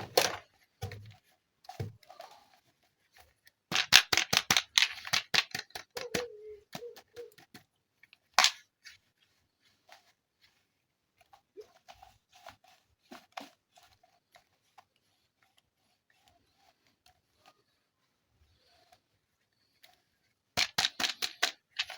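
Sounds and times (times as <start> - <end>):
plastic toy clicks: 3.7 - 6.3, 8.4 - 8.6, 20.6 - 21.9.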